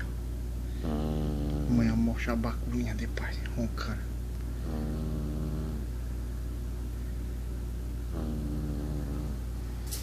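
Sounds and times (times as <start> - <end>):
steady low hum: 0.0 - 10.0
child snoring: 0.8 - 1.9, 4.6 - 5.8, 8.1 - 9.4.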